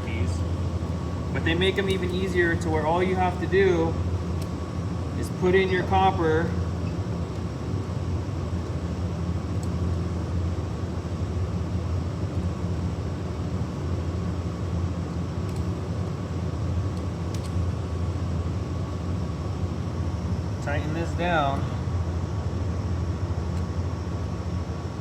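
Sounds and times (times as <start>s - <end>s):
machinery hum: 0.0s - 25.0s
faint light clicks: 15.4s - 15.7s.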